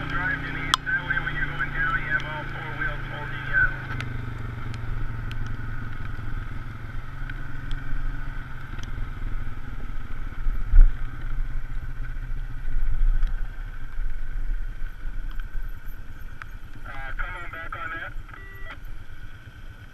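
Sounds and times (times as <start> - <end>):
off-road vehicle engine running: 0.0 - 19.9.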